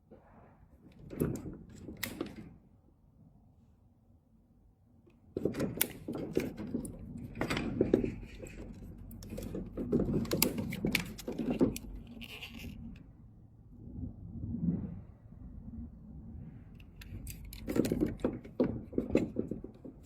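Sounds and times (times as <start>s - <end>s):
sharp clicks and knocks: 0.9s - 2.5s, 5.1s - 13.0s, 16.8s - 20.0s.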